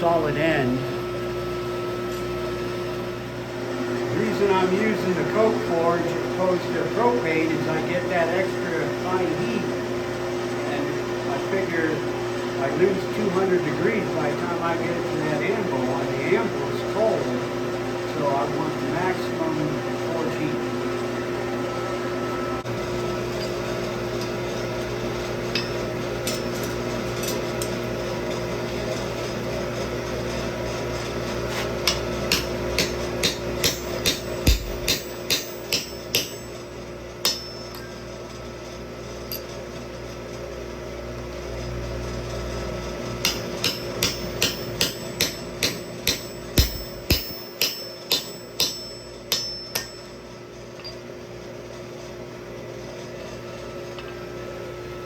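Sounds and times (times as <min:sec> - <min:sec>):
steady mechanical hum: 0:00.0 - 0:55.0
hammer striking steel on anvil: 0:25.5 - 0:27.7, 0:31.5 - 0:38.0, 0:43.2 - 0:51.0.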